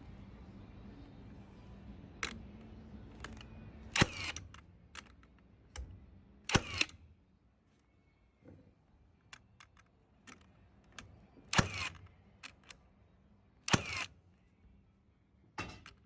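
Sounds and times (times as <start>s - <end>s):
steady low hum: 0.0s - 9.2s
sharp clicks: 6.5s - 7.0s, 13.7s - 14.1s.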